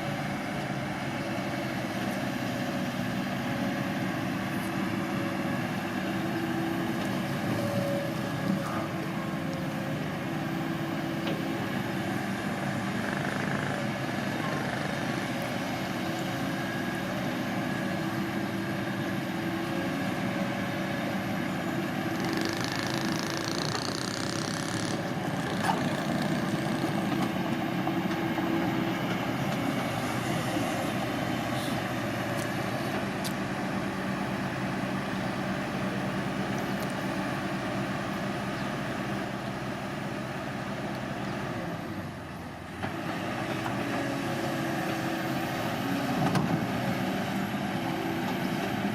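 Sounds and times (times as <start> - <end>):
bulldozer diesel engine running: 0.0 - 48.9.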